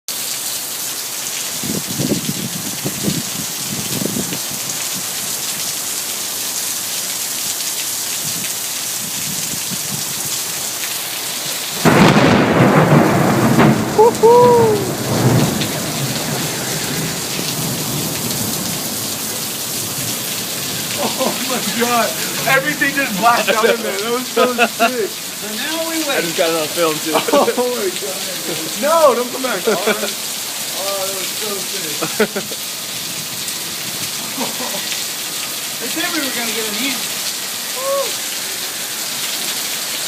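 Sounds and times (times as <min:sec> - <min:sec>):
heavy rain pouring: 0:00.1 - 0:40.0
thunderclap and rumble: 0:11.8 - 0:22.7.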